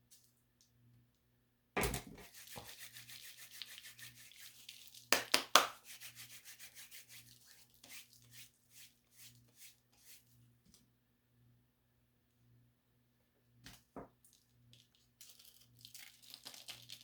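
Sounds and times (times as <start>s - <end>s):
scratching on a hard surface: 2.2s - 5.1s, 5.8s - 10.4s.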